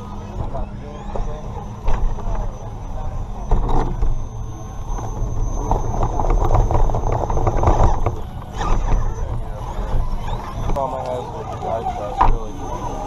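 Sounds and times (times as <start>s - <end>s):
rc truck clattering over rocks: 3.4s - 13.0s.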